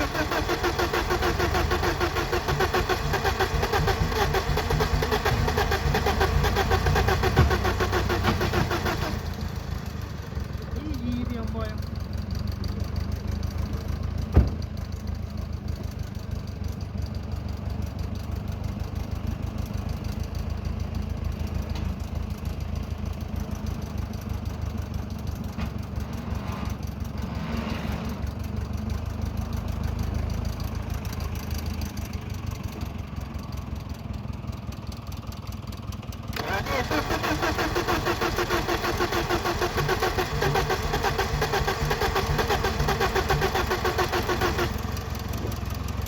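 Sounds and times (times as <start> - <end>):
car engine droning: 0.0 - 17.6, 36.3 - 46.0.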